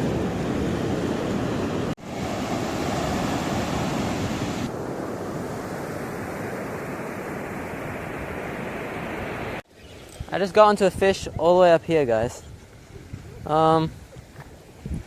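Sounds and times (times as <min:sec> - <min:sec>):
waves washing on rocky shore: 0:00.0 - 0:09.6
wind on microphone: 0:00.0 - 0:15.0.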